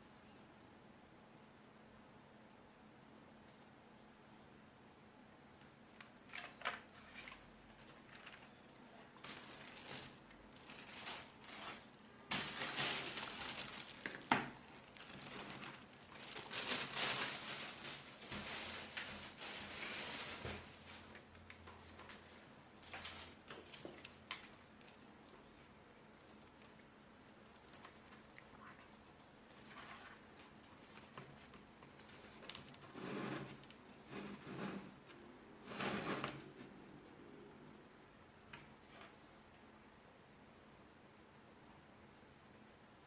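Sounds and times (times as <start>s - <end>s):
packaging crinkling: 9.2s - 21.4s.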